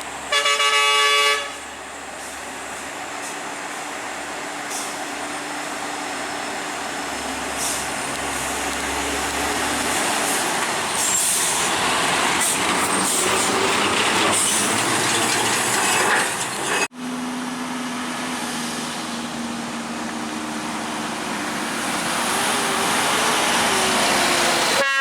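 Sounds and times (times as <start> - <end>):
heavy vehicle engine labouring: 0.0 - 25.0.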